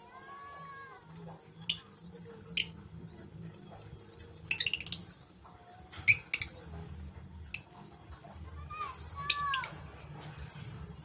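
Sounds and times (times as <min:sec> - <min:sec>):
lovebird chirping: 0:04.4 - 0:05.2, 0:06.0 - 0:06.6.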